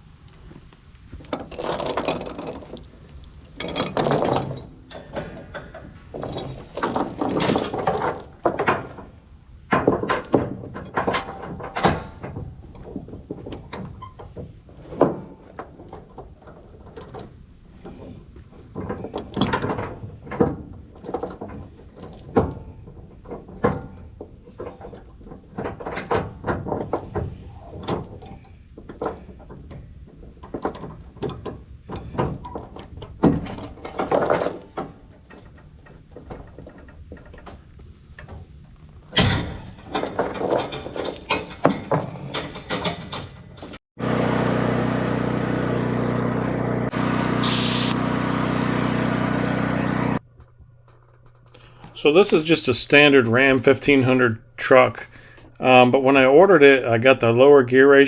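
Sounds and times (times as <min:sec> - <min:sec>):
metal clanks and knocks: 0:03.6 - 0:17.3, 0:39.1 - 0:43.8.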